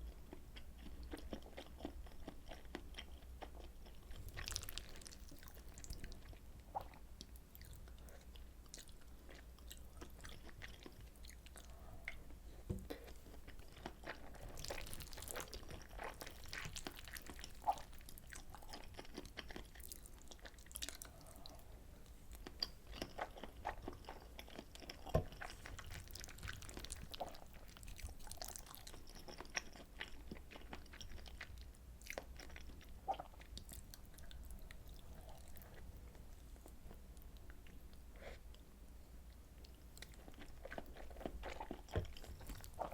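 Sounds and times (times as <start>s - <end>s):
wet chewing and mouth clicks: 0.3s - 12.2s, 12.8s - 21.6s, 22.3s - 35.9s, 39.6s - 42.9s.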